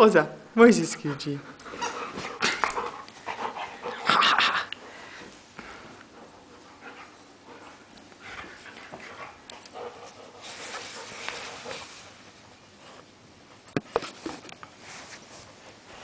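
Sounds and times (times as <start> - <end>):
dog panting: 1.4 - 4.1, 4.8 - 12.2.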